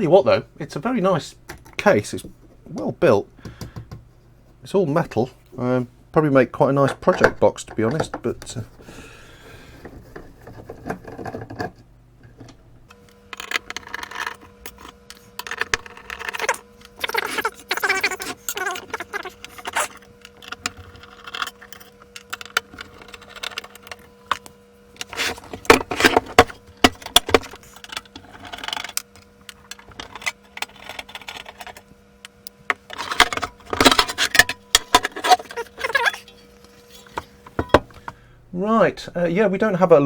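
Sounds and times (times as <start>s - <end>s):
faint steady hum: 0.0s - 40.0s
metal case clicks and rattles: 13.4s - 31.9s, 32.7s - 36.3s.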